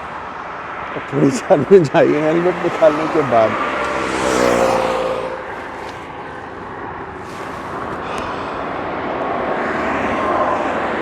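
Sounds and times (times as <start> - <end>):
engine hum: 0.0 - 11.0
road traffic noise: 0.0 - 11.0.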